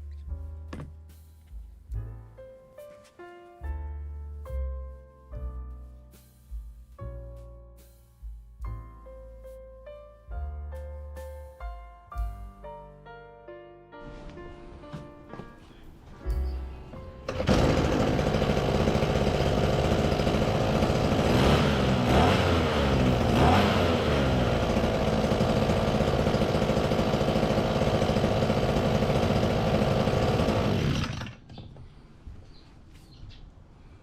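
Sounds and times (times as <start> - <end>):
brush cutter engine revving: 17.3 - 31.5.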